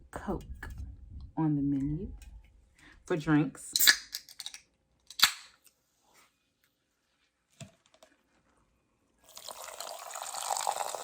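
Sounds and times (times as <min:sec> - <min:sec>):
soda fizzing as poured: 0:09.2 - 0:11.0.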